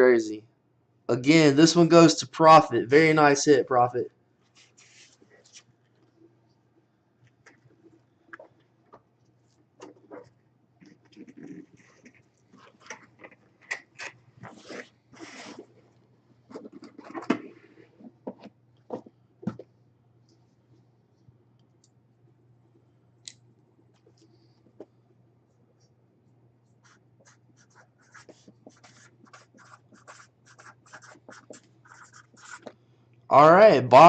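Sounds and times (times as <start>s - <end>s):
low steady hum: 0.0s - 34.0s
scratchy rustling: 4.5s - 5.7s, 14.4s - 15.9s, 26.8s - 32.7s.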